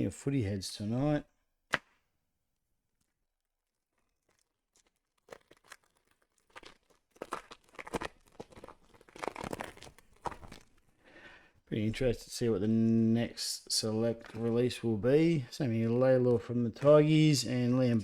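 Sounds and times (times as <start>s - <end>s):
foil wrapper tearing and crinkling: 3.4s - 10.8s.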